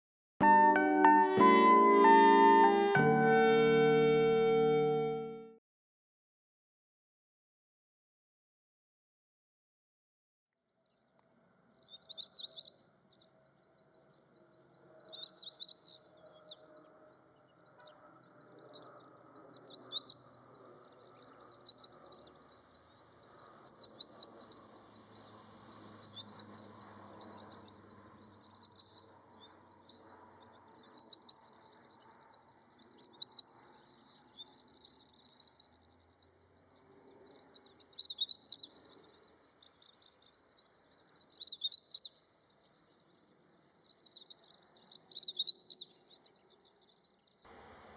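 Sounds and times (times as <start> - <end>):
faint low background noise: 22.0 - 47.9.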